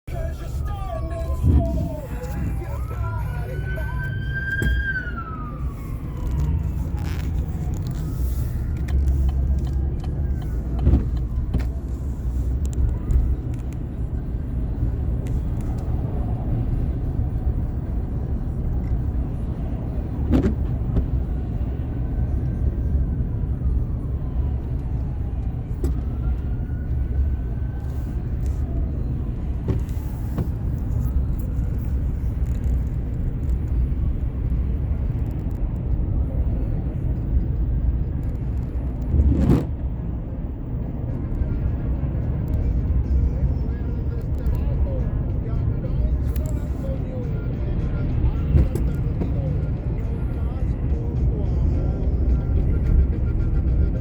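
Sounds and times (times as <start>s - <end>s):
traffic rumble: 0.0s - 54.0s
ambulance siren wailing: 0.1s - 12.0s, 22.0s - 32.1s.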